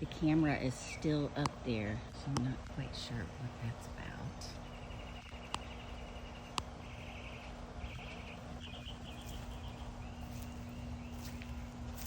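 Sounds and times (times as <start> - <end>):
steady low hum: 0.0 - 12.0
bird singing trills: 4.1 - 12.0.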